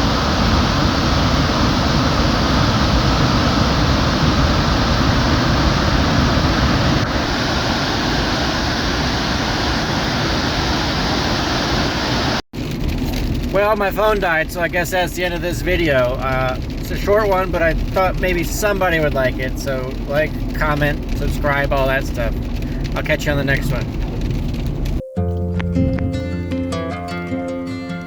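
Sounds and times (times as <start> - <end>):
waterfall roaring: 0.0 - 12.4.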